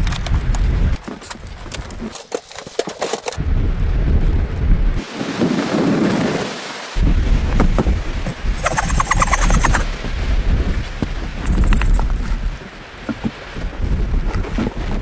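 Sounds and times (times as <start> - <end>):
wind buffeting microphone: 7.0 - 15.0.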